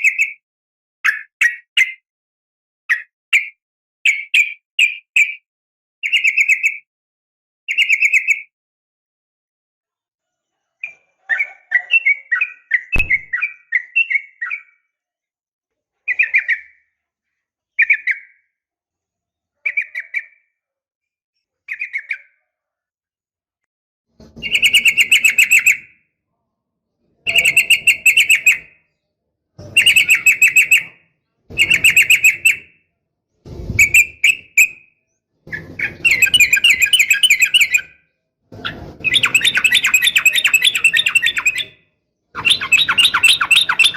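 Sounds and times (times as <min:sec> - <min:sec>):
sharp click: 0:13.0 - 0:13.3
bird chattering and calling: 0:27.3 - 0:28.7, 0:29.8 - 0:31.0, 0:31.6 - 0:32.7, 0:35.6 - 0:37.9, 0:39.1 - 0:41.8, 0:42.4 - 0:43.9.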